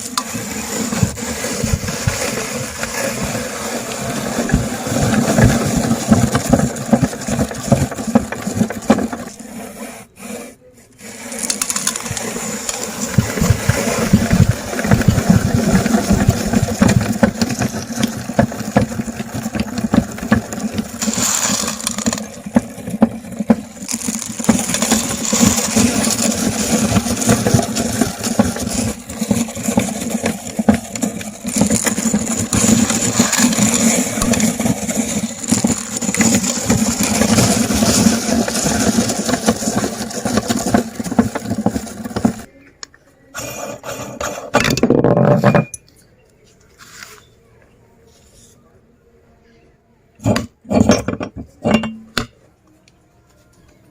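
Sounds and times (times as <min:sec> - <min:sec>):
meat grinder crunching hard candy: 0:00.0 - 0:09.4, 0:11.0 - 0:42.5.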